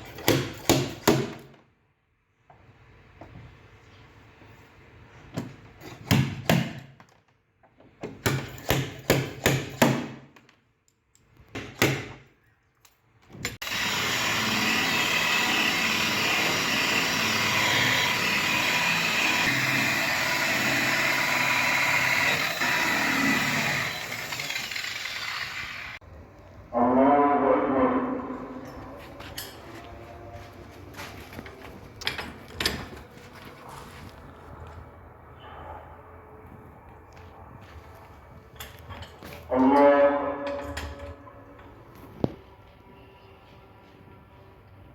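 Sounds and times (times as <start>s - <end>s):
power tool running: 13.6s - 26.0s.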